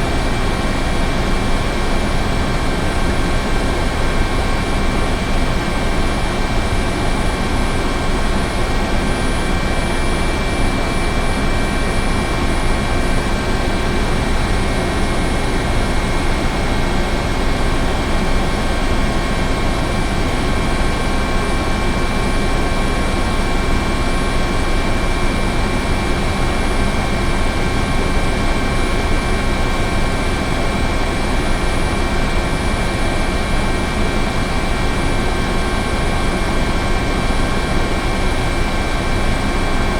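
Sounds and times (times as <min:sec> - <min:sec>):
helicopter engine and rotor noise: 0:00.0 - 0:39.9.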